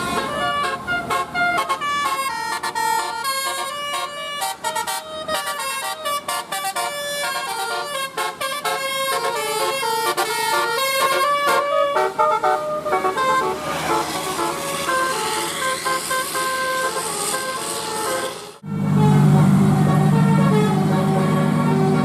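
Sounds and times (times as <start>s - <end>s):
multi-tone air horns playing tune: 0.0s - 22.0s
rushing noise: 12.1s - 22.0s.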